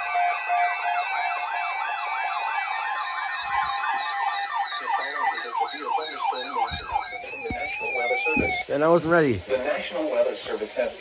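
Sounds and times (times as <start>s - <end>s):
lower-pitched sweeping siren: 0.0s - 8.6s
yelping sirens: 0.0s - 8.7s.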